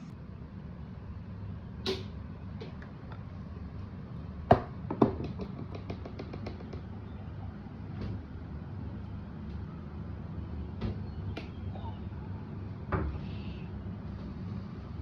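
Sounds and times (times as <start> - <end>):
sharp clicks and knocks: 5.0 - 6.9.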